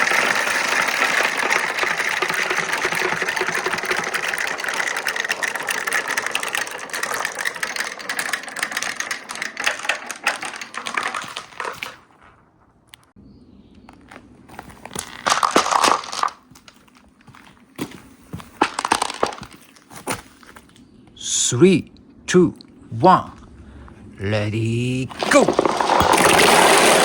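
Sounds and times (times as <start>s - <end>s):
marbles rattling down wooden run: 0.0s - 12.5s, 14.5s - 20.6s, 25.1s - 27.0s.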